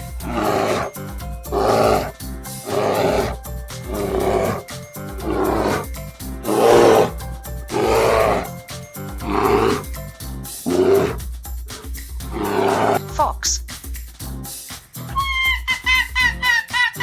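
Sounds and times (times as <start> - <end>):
bear growling and roaring: 0.0 - 11.2, 12.2 - 13.1
background music: 0.0 - 17.0.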